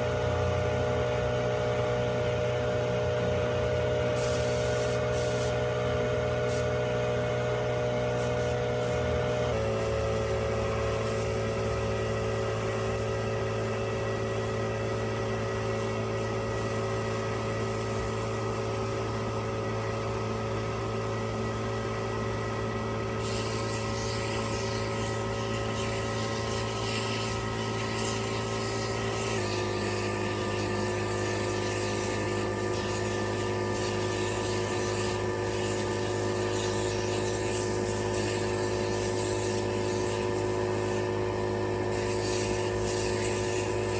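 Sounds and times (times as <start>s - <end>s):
machine humming: 0.0s - 43.9s
hiss: 4.1s - 5.6s, 6.4s - 6.8s, 23.2s - 29.8s, 41.9s - 43.8s.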